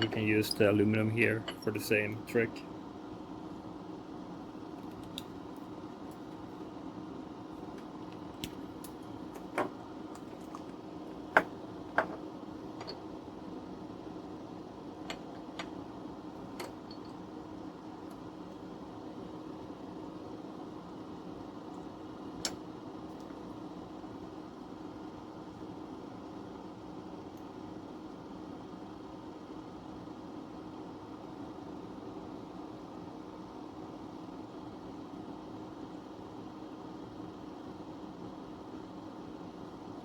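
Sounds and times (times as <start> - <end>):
steady low hum: 0.0 - 24.6
tools clicking and tapping on workbench: 11.3 - 12.2, 12.8 - 13.0.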